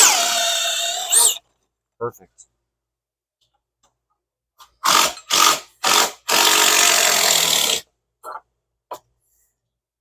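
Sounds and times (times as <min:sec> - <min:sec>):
handheld power tool bursts: 0:04.8 - 0:07.9.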